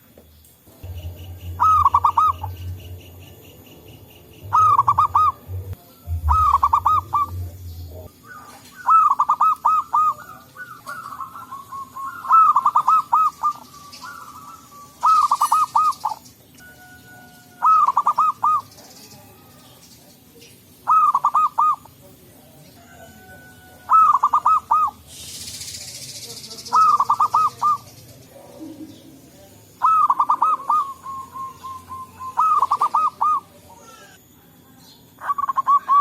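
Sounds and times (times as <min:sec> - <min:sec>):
low hum: 0:00.7 - 0:08.3
doves cooing: 0:00.7 - 0:22.0, 0:22.8 - 0:34.2.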